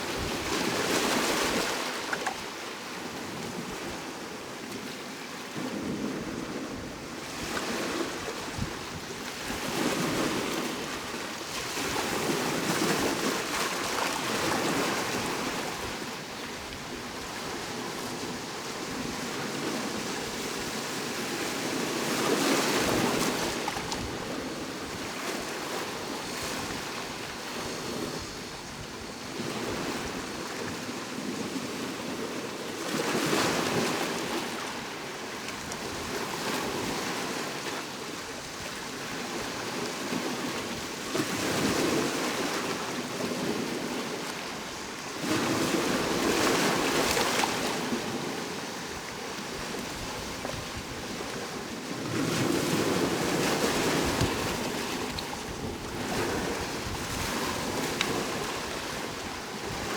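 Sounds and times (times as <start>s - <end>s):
ocean waves breaking: 0.0s - 4.9s.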